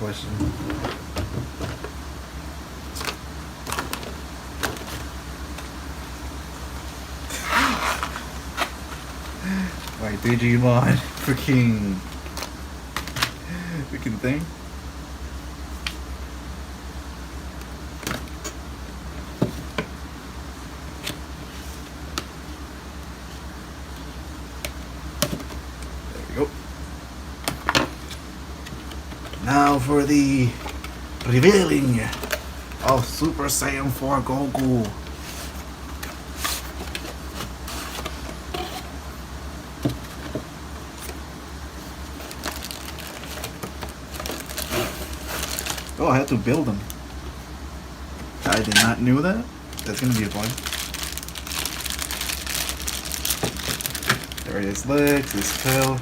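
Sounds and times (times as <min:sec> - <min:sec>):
low hum: 0:00.0 - 0:19.4
packaging rustling and scraping: 0:02.9 - 0:05.2, 0:07.3 - 0:13.4, 0:34.5 - 0:39.0, 0:39.8 - 0:47.5, 0:48.3 - 0:49.0, 0:49.7 - 0:56.0.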